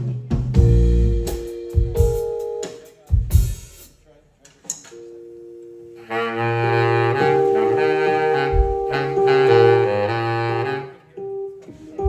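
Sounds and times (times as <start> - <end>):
bass and drums: 0.0 - 4.0
kick drum thump: 0.3 - 1.0, 1.8 - 2.3, 3.1 - 3.7, 8.5 - 9.1
horn section playing chords: 5.8 - 11.4.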